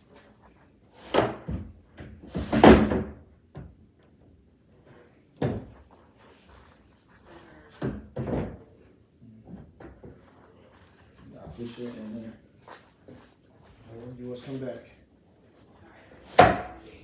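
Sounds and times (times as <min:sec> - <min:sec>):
wooden table thumps and knocks: 0:16.4 - 0:16.8.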